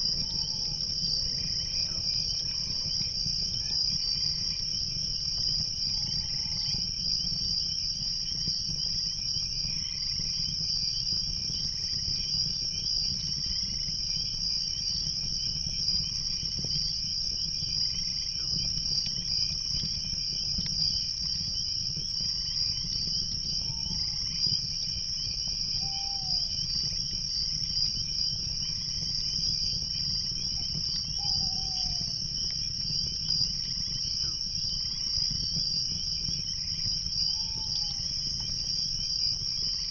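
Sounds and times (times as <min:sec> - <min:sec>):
sharp high insect chirp: 0:00.0 - 0:07.2, 0:14.6 - 0:17.0, 0:20.7 - 0:39.9
crickets trilling: 0:00.0 - 0:39.9.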